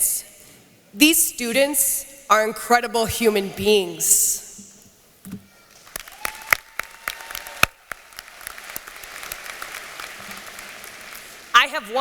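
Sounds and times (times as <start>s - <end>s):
audience applause: 5.7s - 11.6s.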